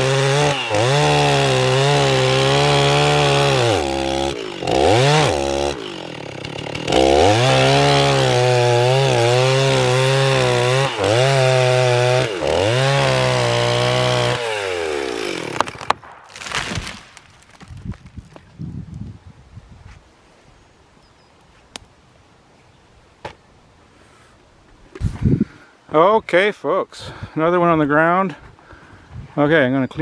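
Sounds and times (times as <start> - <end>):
chainsaw cutting wood: 0.0 - 17.7, 25.0 - 25.6.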